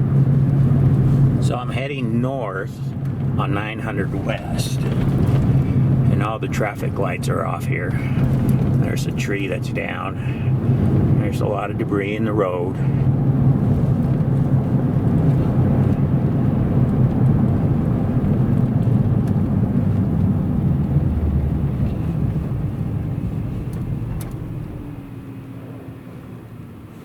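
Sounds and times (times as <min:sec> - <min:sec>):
car engine and tyres rumbling: 0:00.0 - 0:27.0.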